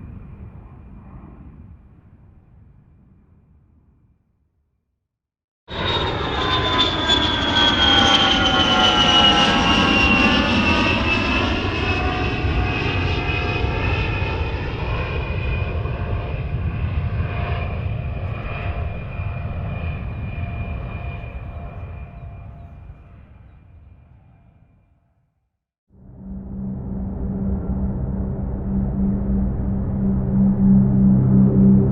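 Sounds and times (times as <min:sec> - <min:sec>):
jet aircraft rushing and whining: 0:05.7 - 0:24.6, 0:26.0 - 0:31.9.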